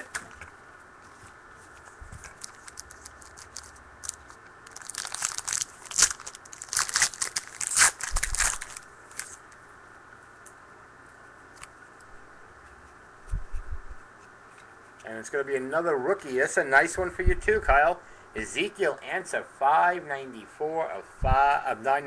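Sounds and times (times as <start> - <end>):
foil wrapper tearing and crinkling: 2.2 - 9.4.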